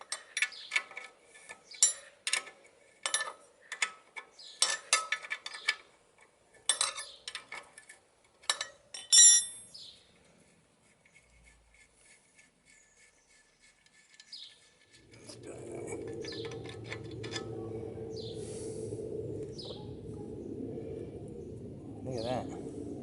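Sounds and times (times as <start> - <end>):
metal parts clinking and rattling: 0.0 - 3.9, 6.7 - 9.7.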